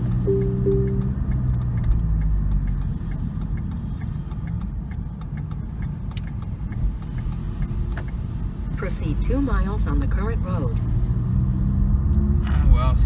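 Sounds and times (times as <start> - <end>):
road and engine rumble: 0.0 - 13.0
faint ticking: 0.3 - 8.4.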